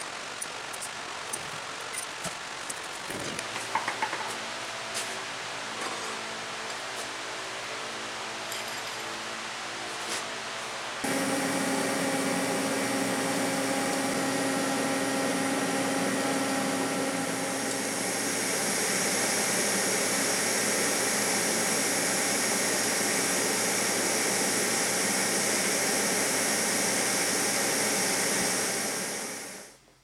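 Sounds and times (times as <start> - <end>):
welding arc hissing: 11.0 - 29.7.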